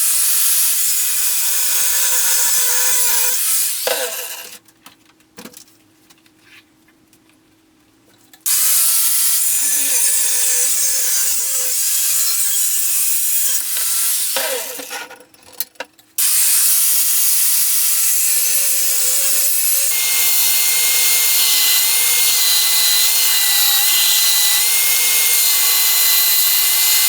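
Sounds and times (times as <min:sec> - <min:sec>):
power tool grinding: 0:00.0 - 0:04.4, 0:08.5 - 0:15.1, 0:16.2 - 0:27.0.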